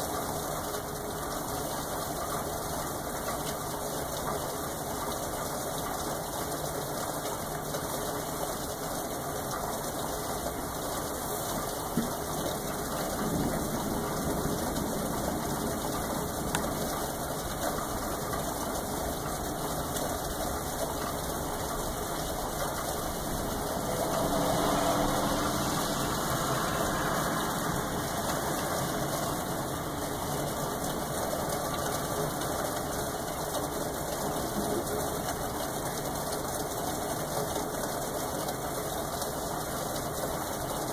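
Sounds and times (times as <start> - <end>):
steady rain hiss: 0.0 - 40.9.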